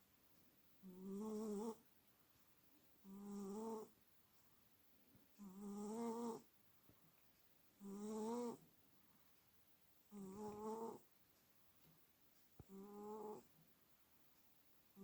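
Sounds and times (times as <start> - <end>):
cat snoring: 0.8 - 1.8, 3.0 - 3.9, 5.4 - 6.5, 7.8 - 8.6, 10.1 - 11.0, 12.6 - 13.5.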